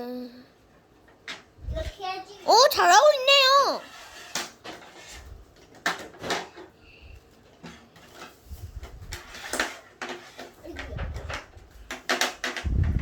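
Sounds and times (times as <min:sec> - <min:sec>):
low rumble: 0:12.7 - 0:13.0.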